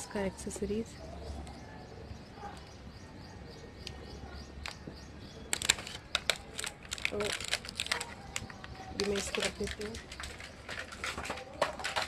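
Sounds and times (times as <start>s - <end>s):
packaging crackling: 5.5s - 12.0s.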